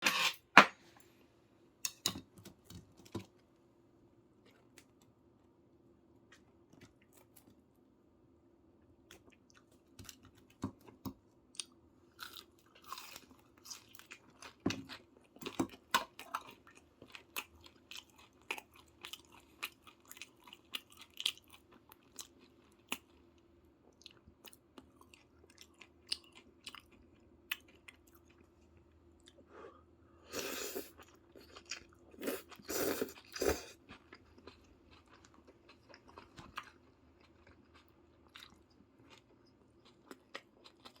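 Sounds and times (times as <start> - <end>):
person chewing and crunching: 9.1 - 29.5, 30.3 - 41.0.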